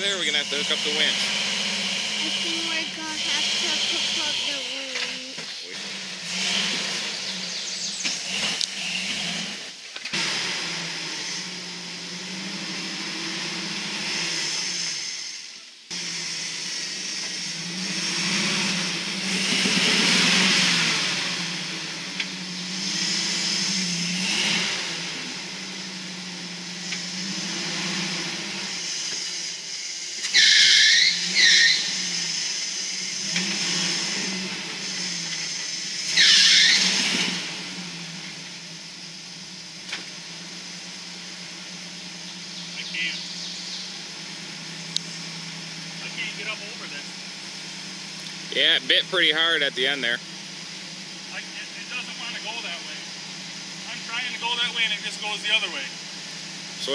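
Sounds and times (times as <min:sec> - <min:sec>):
truck engine revving: 0:00.0 - 0:56.9
high-pitched squeals: 0:28.7 - 0:37.4.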